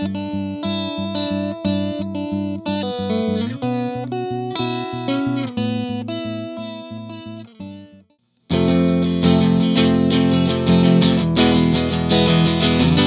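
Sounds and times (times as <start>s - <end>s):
electric guitar with chorus effect: 0.0s - 13.0s.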